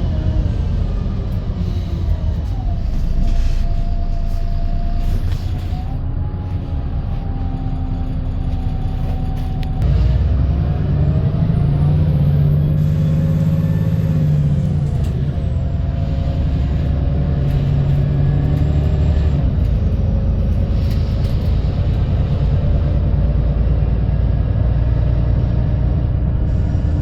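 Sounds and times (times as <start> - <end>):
rattles and clicks from bus body: 0.0 - 10.1, 13.8 - 26.9
bus engine drone: 0.0 - 27.0.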